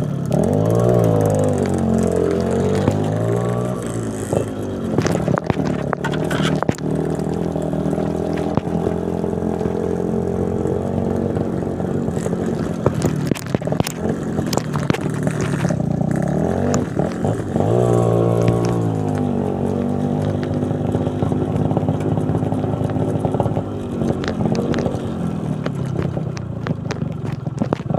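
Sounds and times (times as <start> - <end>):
bike rattling over stony road: 0.0 - 27.9
motorcycle engine running: 0.0 - 27.9.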